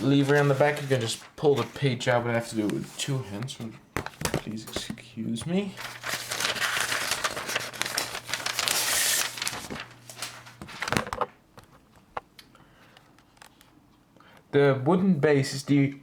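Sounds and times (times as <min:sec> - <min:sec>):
paper rustling and crinkling: 0:00.0 - 0:11.8.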